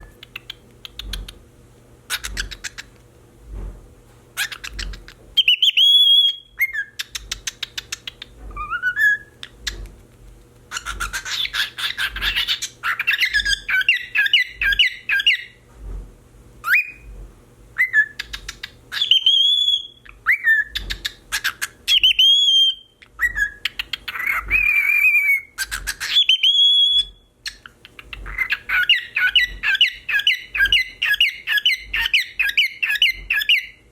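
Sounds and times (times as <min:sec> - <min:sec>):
cockatiel whistling: 0:04.4 - 0:07.2, 0:08.6 - 0:09.4, 0:10.7 - 0:15.6, 0:16.6 - 0:17.1, 0:17.8 - 0:27.6, 0:28.3 - 0:33.8
cockatiel sharp calls: 0:10.7 - 0:15.4.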